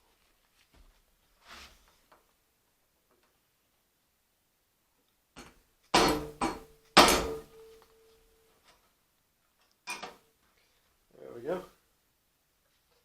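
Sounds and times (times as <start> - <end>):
hammer striking metal punch: 6.0 - 7.7.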